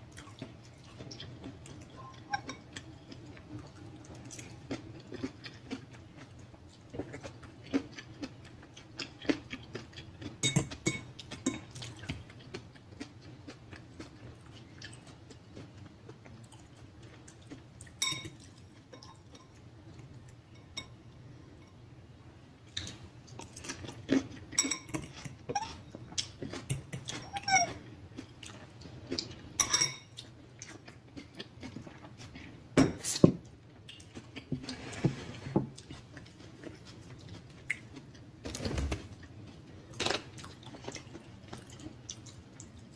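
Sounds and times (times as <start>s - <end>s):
wet chewing and smacking: 0.1s - 19.2s
utensils clinking on a dish: 18.0s - 19.6s, 29.6s - 30.2s.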